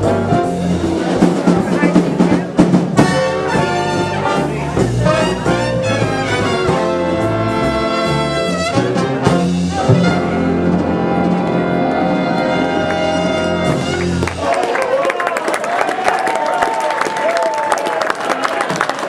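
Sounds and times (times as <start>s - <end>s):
brass section playing chords: 0.0s - 14.4s.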